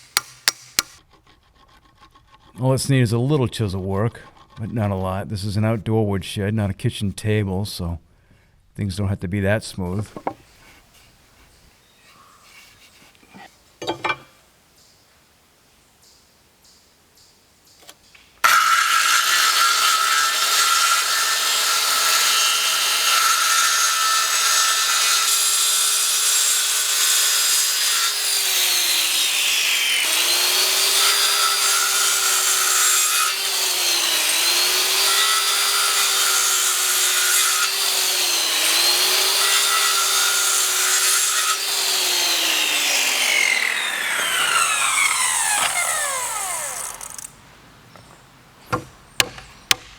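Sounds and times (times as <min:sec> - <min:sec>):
circular saw cutting wood: 0:18.4 - 0:47.4.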